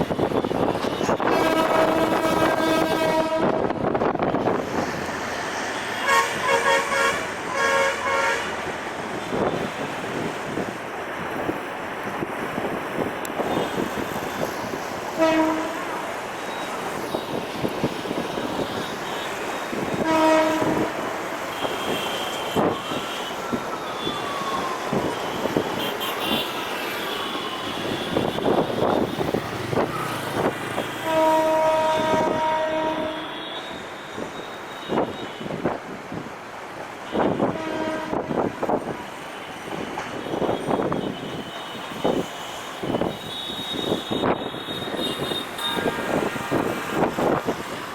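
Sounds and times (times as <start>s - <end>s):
train rumble and wheel clatter: 0.0s - 47.9s
train horn toots: 0.6s - 3.7s, 5.8s - 8.6s, 15.1s - 24.2s, 30.7s - 35.7s, 37.1s - 38.8s, 39.4s - 47.1s.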